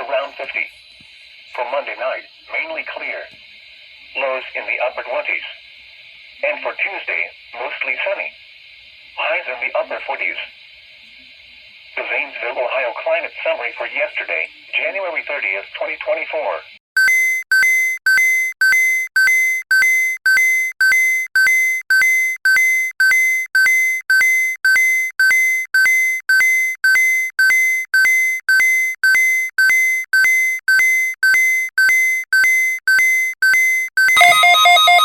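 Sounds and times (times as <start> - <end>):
two-pitch electronic alarm bursts: 17.0 - 35.0.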